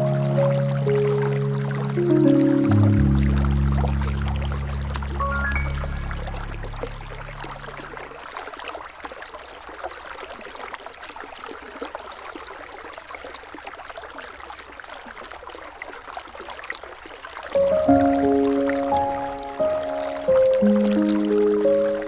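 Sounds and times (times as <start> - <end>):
background music: 0.0 - 8.0, 17.6 - 22.0
river water rushing: 0.0 - 8.3, 17.6 - 22.0
small water splashes: 0.0 - 22.0.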